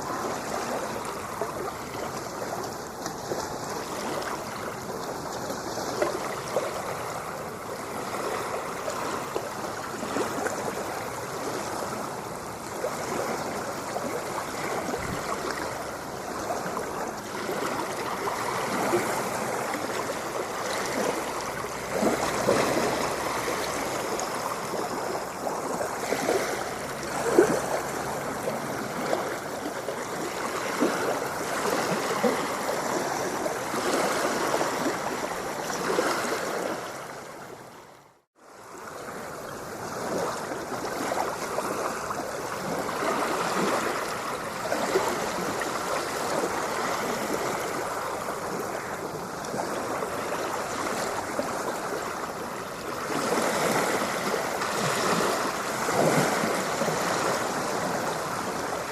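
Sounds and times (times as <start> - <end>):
water splashing and gurgling: 0.0 - 58.9.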